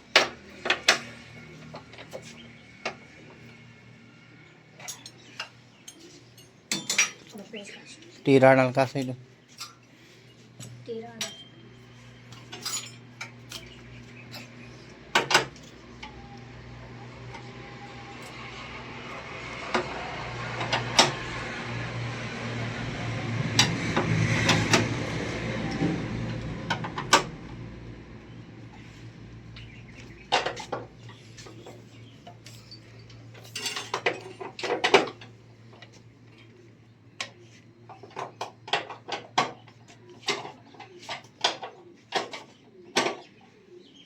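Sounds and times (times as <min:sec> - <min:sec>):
metal tools clinking and knocking: 0:04.8 - 0:07.3, 0:12.3 - 0:14.5, 0:30.3 - 0:35.9.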